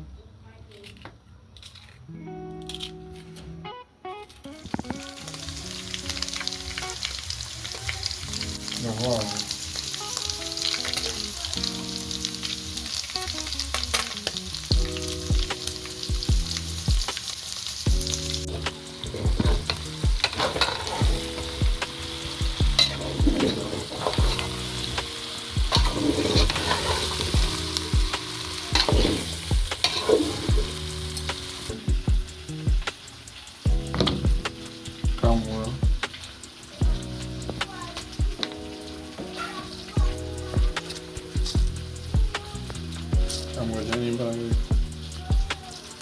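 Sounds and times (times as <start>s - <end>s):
food sizzling in a pan: 4.6s - 46.0s
background music with a beat: 9.5s - 46.0s
spoon scraping a pan: 18.4s - 31.4s.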